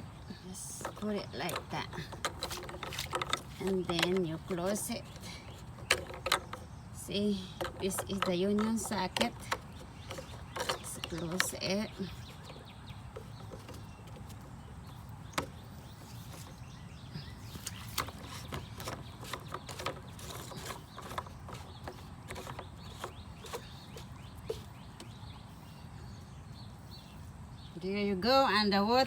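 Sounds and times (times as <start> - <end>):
plastic clicks and taps: 7.6 - 11.6.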